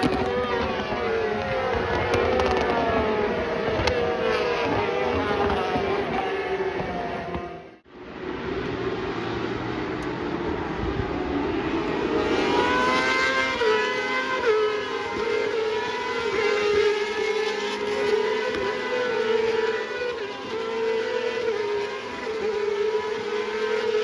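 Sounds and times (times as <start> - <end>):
superbike engines revving: 0.0 - 7.8.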